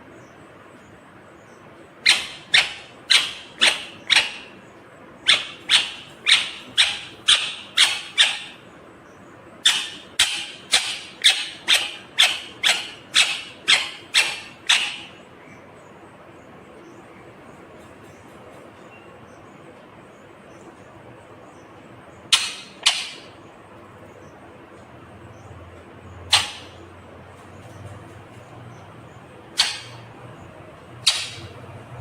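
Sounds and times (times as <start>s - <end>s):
parakeet screeching: 2.0s - 4.6s, 5.2s - 8.6s, 9.6s - 15.2s, 22.3s - 23.4s, 26.3s - 26.8s, 29.5s - 30.1s, 31.0s - 31.6s.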